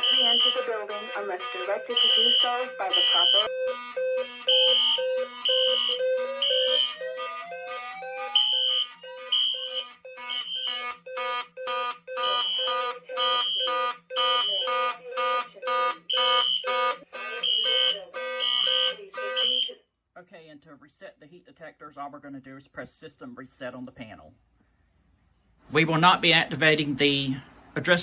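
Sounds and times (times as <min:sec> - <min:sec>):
fire alarm horns pulsing: 0:00.0 - 0:19.8
high beeping tone: 0:00.0 - 0:19.8.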